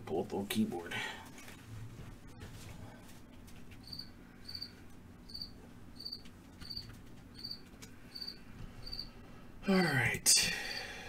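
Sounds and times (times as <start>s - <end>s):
cricket chirping: 3.8s - 9.1s.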